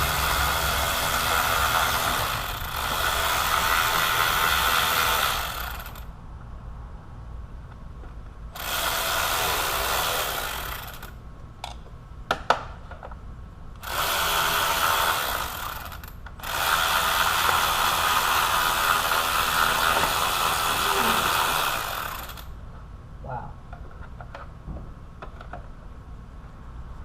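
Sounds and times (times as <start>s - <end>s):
cordless power driver running: 0.0s - 6.0s, 13.8s - 22.5s.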